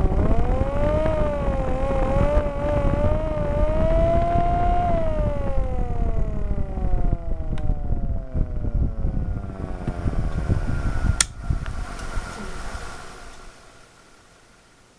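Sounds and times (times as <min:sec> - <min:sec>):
low rumble: 0:00.0 - 0:14.3
air raid siren winding down: 0:00.0 - 0:14.4.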